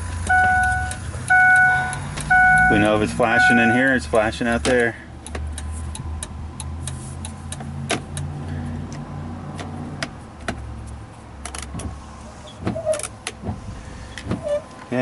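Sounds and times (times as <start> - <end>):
turn signal clicking: 0.0 - 3.8, 4.5 - 8.3.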